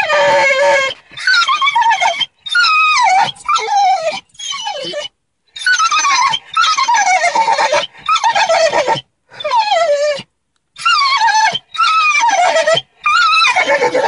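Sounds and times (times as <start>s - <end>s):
dog whining cries: 0.0s - 14.0s.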